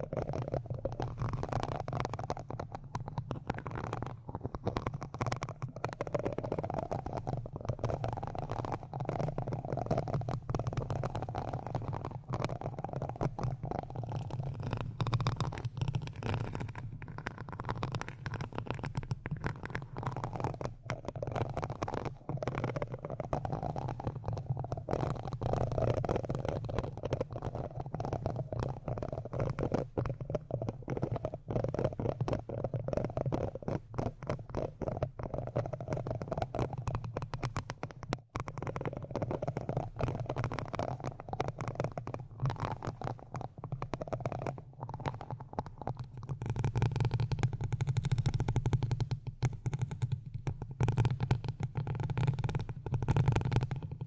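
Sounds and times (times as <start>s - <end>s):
rubbing and scratching on microphone: 0.0s - 54.0s.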